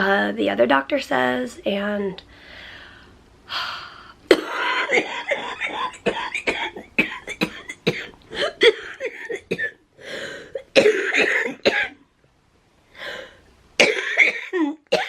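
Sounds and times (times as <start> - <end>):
woman coughing: 4.3 - 9.8, 10.6 - 12.0, 13.8 - 15.0.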